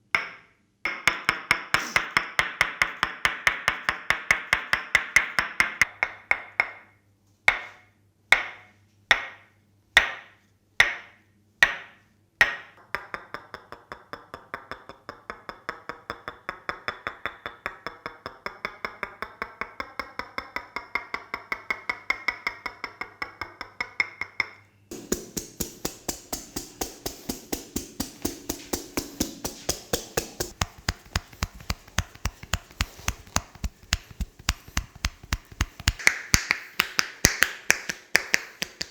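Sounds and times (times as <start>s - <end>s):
hands tapping on body: 24.9s - 38.9s.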